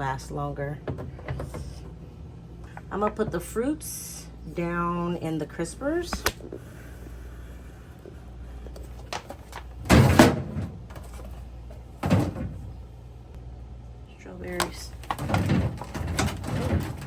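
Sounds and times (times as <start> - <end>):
refrigerator drawer scraping slide: 15.2 - 17.0.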